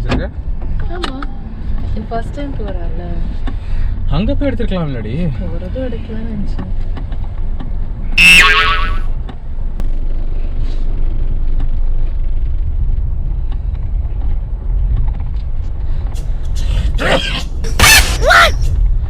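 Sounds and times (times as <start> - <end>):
car road and engine rumble: 0.0 - 19.0
brief shrill high-pitched sound: 8.2 - 9.1.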